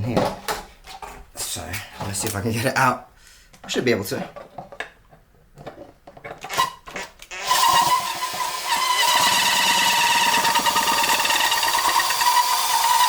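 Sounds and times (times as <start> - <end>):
electric drill whining: 7.3 - 13.0.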